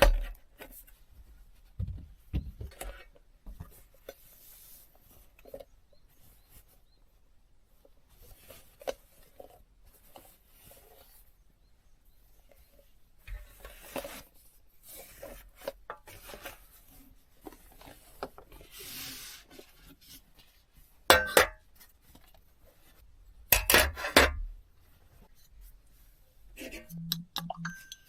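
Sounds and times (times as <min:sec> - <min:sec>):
objects rubbing and scraping: 0:13.5 - 0:20.4, 0:26.5 - 0:28.0.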